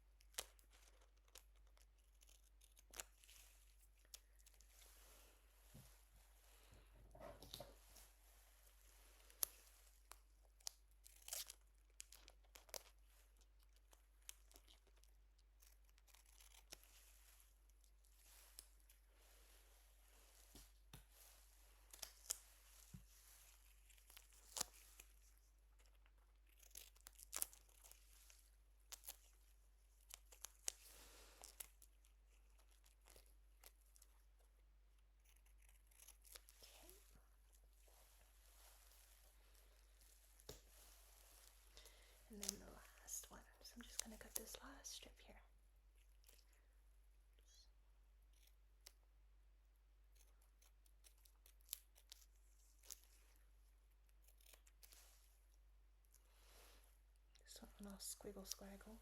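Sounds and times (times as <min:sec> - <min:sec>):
crinkling and sticky peeling: 0:00.0 - 0:59.0
scissors snipping: 0:00.2 - 0:03.4, 0:09.2 - 0:13.0, 0:14.3 - 0:16.9.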